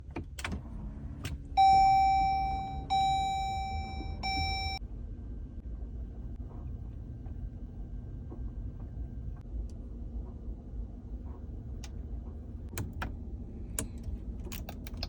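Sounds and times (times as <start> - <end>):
low steady hum: 0.1 - 15.0
car warning chime: 1.6 - 4.8.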